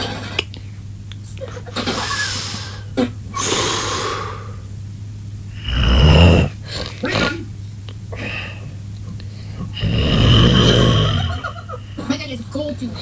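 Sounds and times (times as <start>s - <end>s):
breathy inhales and exhales: 2.2s - 4.7s, 5.5s - 7.3s, 8.1s - 12.0s
loud rattling snore: 3.4s - 4.6s, 5.5s - 7.5s, 8.2s - 11.7s.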